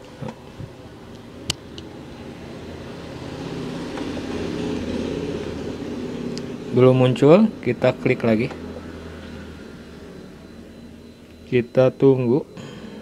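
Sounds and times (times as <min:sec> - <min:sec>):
low droning engine-like hum: 0:04.8 - 0:13.0.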